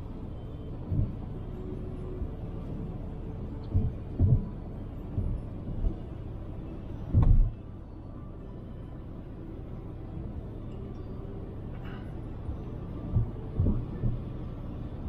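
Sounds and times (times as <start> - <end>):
road rumble: 0.0 - 15.0
low thumps: 13.1 - 14.2.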